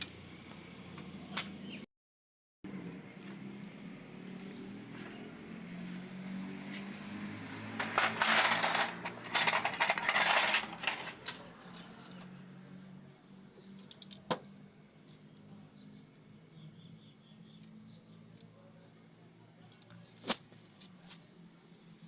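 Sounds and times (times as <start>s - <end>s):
small metal pieces clinking: 7.8s - 11.4s.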